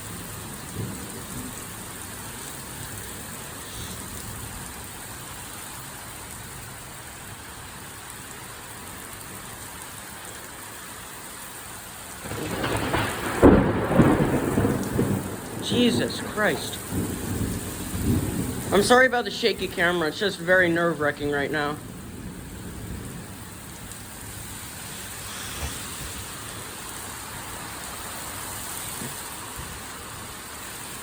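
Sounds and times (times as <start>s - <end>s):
heavy rain falling: 0.0s - 31.0s
thunder cracking and rumbling: 12.2s - 27.6s.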